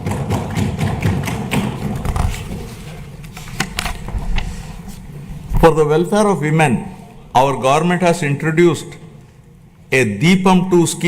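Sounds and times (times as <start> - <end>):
people thumping desks: 0.0 - 6.0.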